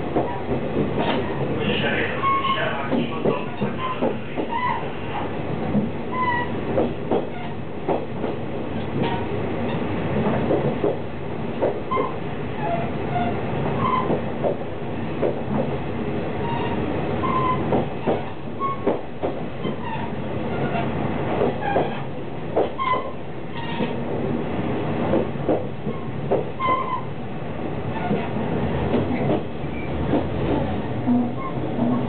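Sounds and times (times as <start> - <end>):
train engine and bogies rumbling: 0.0 - 32.0.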